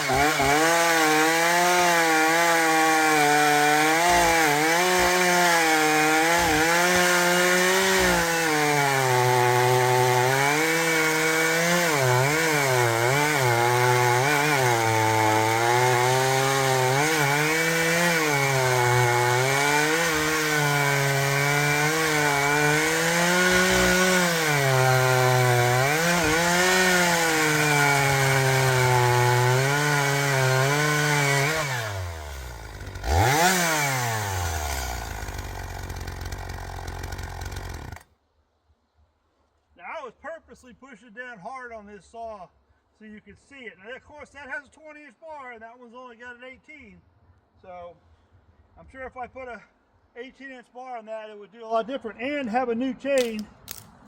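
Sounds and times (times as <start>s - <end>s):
chainsaw cutting through log: 0.0s - 38.1s.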